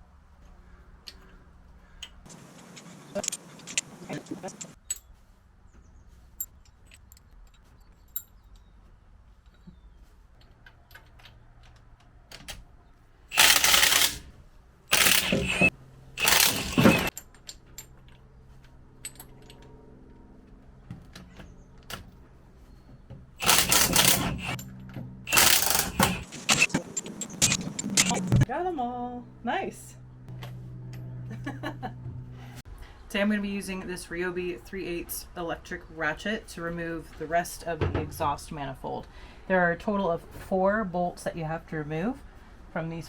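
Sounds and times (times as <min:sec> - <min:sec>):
metallic tool clicks: 0:13.3 - 0:14.2, 0:14.9 - 0:17.5, 0:23.4 - 0:24.6, 0:25.3 - 0:28.3
impact wrench bursts: 0:13.3 - 0:14.3, 0:14.9 - 0:17.1, 0:23.4 - 0:24.6, 0:25.3 - 0:28.5.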